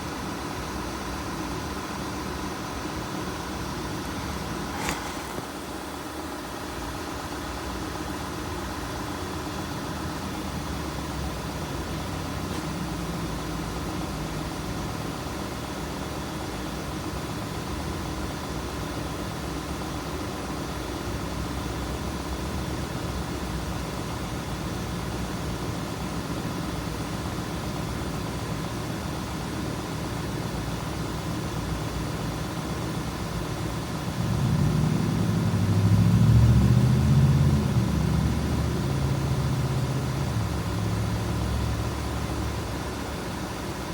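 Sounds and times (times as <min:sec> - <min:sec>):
car engine idling: 0:00.2 - 0:43.9
deeper louder engine sound: 0:34.1 - 0:42.1.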